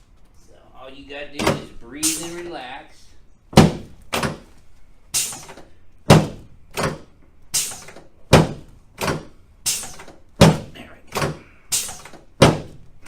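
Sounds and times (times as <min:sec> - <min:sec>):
chiropractic thumps with cracks: 0:01.4 - 0:02.2, 0:03.5 - 0:04.6, 0:05.2 - 0:13.0.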